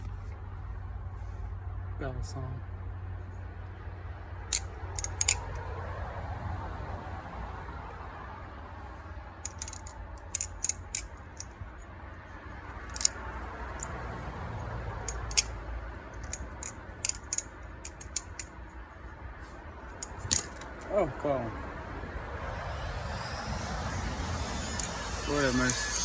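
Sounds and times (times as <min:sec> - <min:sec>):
low steady rumble: 0:00.0 - 0:26.0
butterfly knife metallic clicks: 0:04.5 - 0:05.6, 0:12.9 - 0:13.2, 0:15.0 - 0:15.6, 0:16.2 - 0:18.5.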